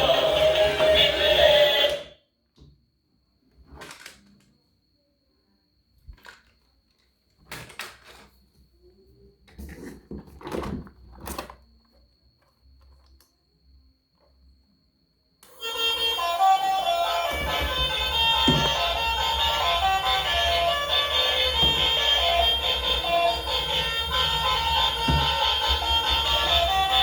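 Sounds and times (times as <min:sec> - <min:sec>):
music: 0:00.0 - 0:02.1, 0:15.4 - 0:27.0.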